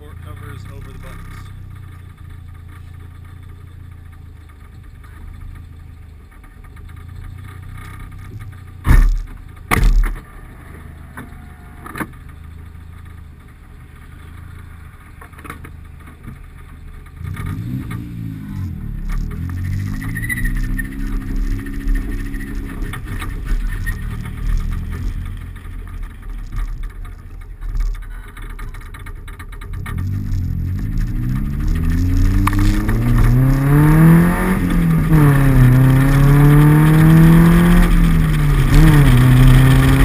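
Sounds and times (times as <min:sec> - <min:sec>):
muffled car engine: 0:00.0 - 0:40.0
heavy thumps: 0:08.8 - 0:10.3.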